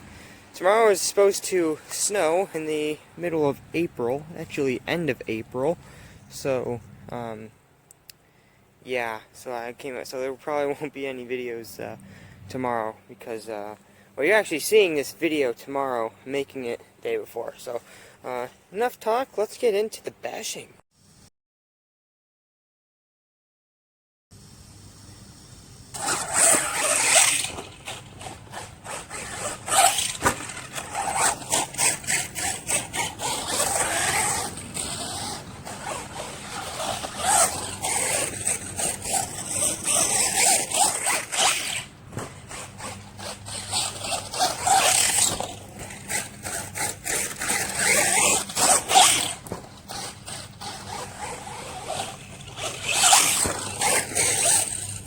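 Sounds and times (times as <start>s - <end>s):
rc truck motor whining: 25.8s - 55.0s
tyres scrabbling on dirt: 25.9s - 55.0s.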